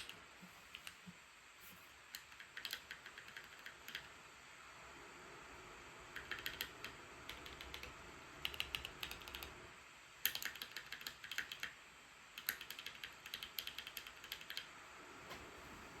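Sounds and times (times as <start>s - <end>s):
laptop cooling fans hissing: 0.0s - 16.0s
mechanical keyboard key clicks: 10.2s - 11.7s, 12.4s - 14.6s.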